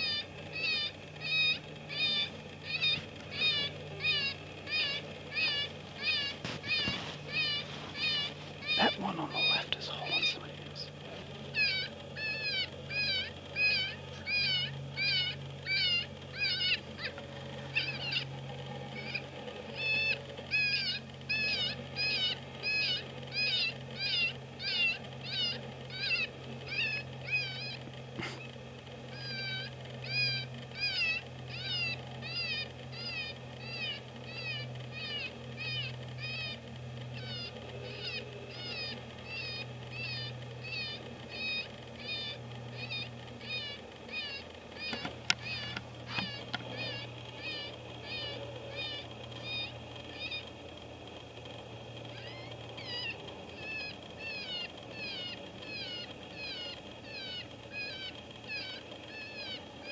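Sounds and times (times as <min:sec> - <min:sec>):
looped animal distress call: 0:00.0 - 0:59.9.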